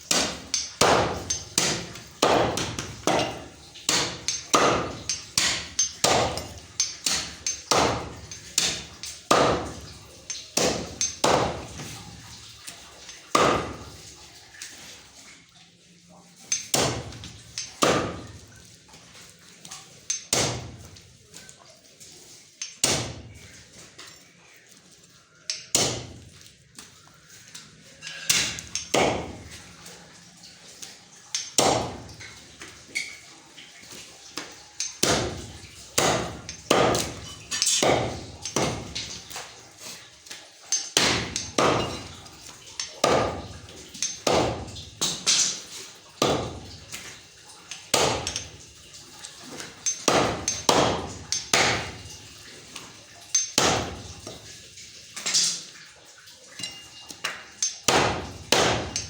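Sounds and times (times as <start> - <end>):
cleaver chopping meat on block: 0.1 - 6.5, 7.1 - 9.8, 10.6 - 11.7, 13.4 - 13.8, 16.7 - 17.2, 17.8 - 18.2, 20.3 - 20.8, 22.8 - 23.2, 25.7 - 26.2, 28.3 - 29.3, 31.6 - 32.0, 35.0 - 35.4, 36.0 - 37.2, 37.8 - 39.0, 41.0 - 41.9, 43.0 - 43.4, 44.2 - 45.2, 46.2 - 46.6, 50.1 - 52.0, 53.6 - 54.0, 57.9 - 59.0.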